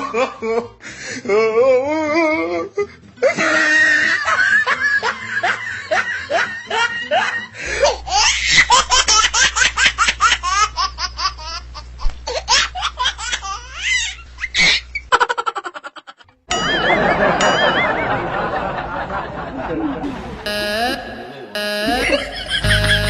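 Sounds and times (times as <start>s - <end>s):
hearty rapid laughter: 3.2s - 9.6s, 15.1s - 20.1s
noisy sound with warbling tones: 20.1s - 23.0s.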